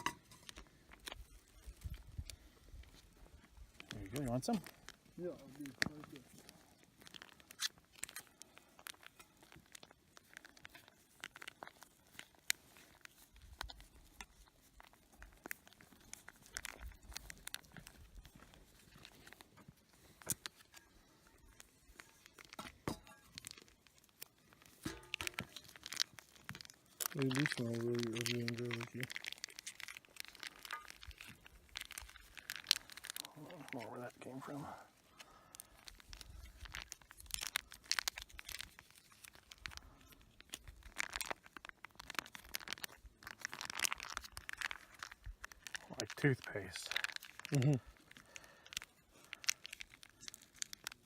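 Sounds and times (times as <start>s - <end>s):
camp cooking gear clicking: 0.0s - 51.0s
food packaging crinkling: 0.0s - 51.0s.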